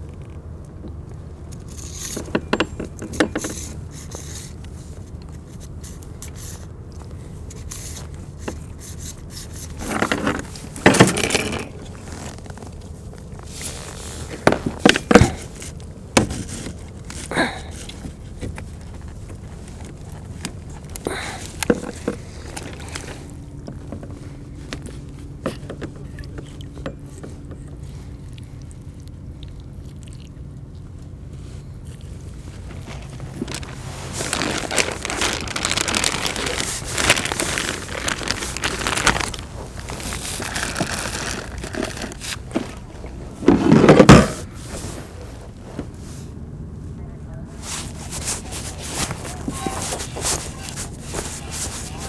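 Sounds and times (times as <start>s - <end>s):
fishing gear knocking and scraping: 1.6s - 4.7s, 8.4s - 27.7s, 32.6s - 44.5s.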